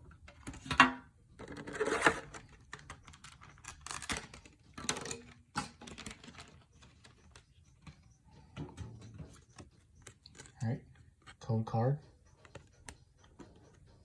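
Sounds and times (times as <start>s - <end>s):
tin and packaging clicking and rustling: 0.2s - 11.4s.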